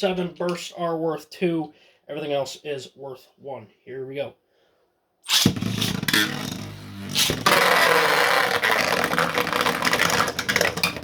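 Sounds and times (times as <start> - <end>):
spinning tops whirring and scraping: 5.3 - 11.0.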